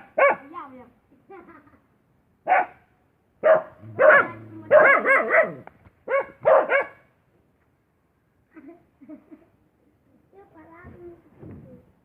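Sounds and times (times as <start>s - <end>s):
dog barking: 0.0s - 0.5s, 2.5s - 7.1s.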